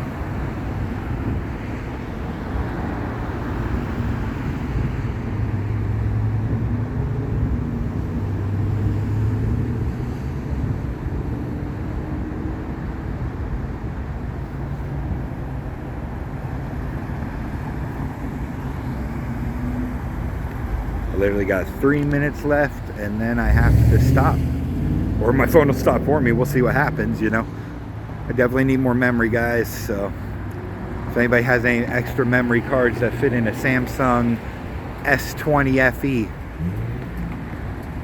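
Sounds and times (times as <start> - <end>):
freeway traffic rushing: 0.0 - 38.0
deep engine hum: 22.2 - 28.9.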